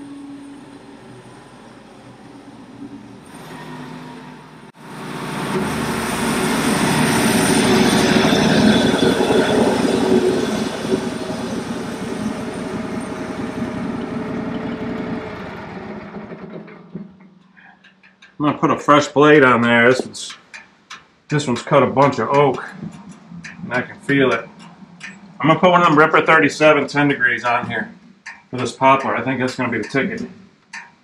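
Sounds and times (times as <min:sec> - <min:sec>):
bandsaw mill running: 0:03.3 - 0:17.1.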